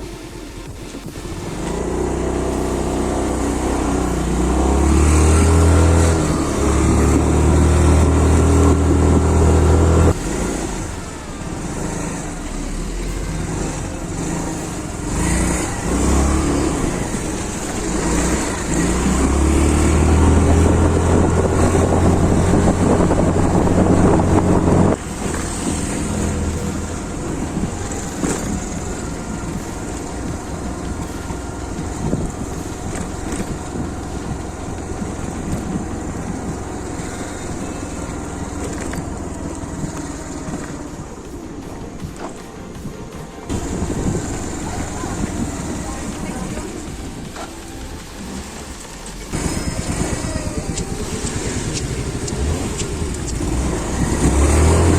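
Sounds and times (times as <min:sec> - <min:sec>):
scooter engine under throttle: 0:00.0 - 0:41.4, 0:43.5 - 0:54.9
road hiss: 0:00.0 - 0:54.9
wind on microphone: 0:00.0 - 0:54.9.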